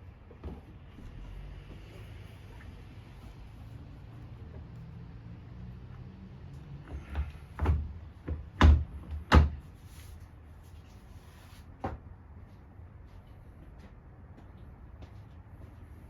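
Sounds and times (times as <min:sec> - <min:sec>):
sharp knocks and thumps: 0:06.9 - 0:09.6.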